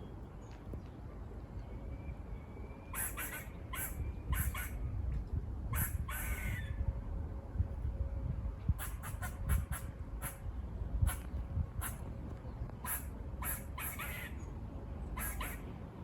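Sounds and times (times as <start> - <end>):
squirrel barking: 2.9 - 4.8, 5.7 - 6.7, 8.8 - 10.4, 11.0 - 12.0, 12.8 - 14.4, 15.2 - 15.7.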